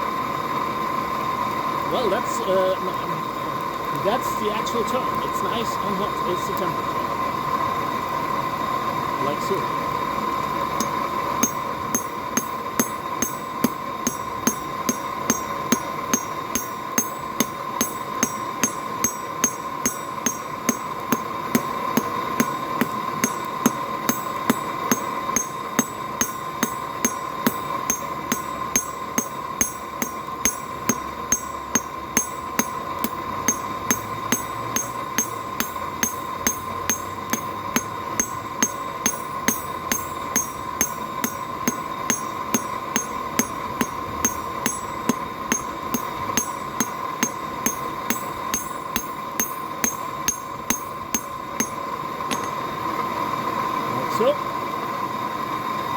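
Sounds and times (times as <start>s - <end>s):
steady hum: 0.0s - 54.3s
hammer striking steel on anvil: 10.8s - 52.7s.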